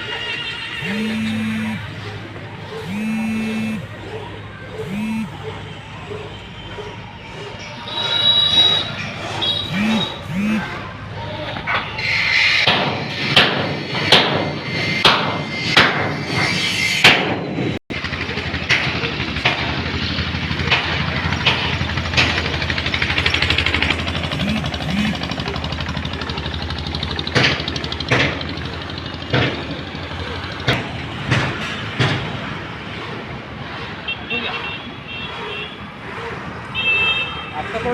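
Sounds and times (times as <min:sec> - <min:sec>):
motor humming: 0:00.8 - 0:02.0, 0:02.8 - 0:04.0, 0:04.8 - 0:05.6, 0:09.6 - 0:10.9, 0:24.2 - 0:25.6
sharp knocks: 0:12.6 - 0:16.2, 0:30.7 - 0:32.4.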